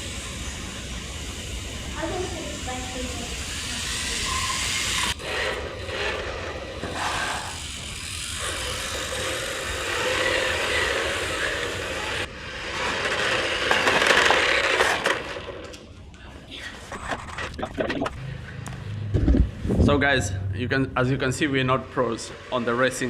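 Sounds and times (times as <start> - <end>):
rc car motor whine: 0.0 - 15.9.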